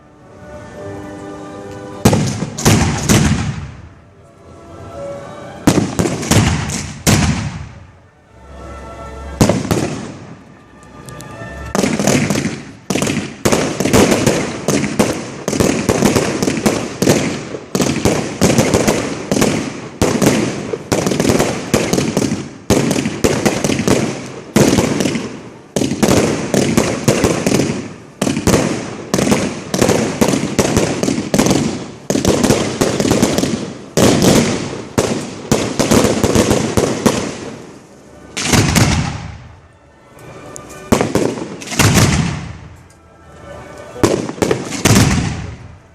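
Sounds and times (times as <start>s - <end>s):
fireworks bangs and bursts: 2.0s - 3.9s, 5.7s - 7.8s, 9.4s - 10.3s, 11.7s - 39.5s, 40.9s - 42.7s, 44.0s - 45.8s.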